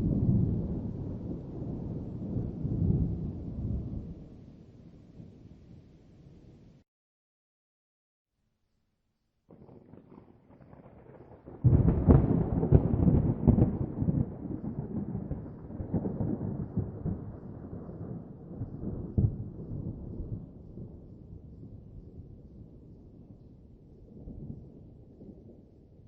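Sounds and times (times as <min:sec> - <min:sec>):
thunderclap: 0:09.5 - 0:20.9.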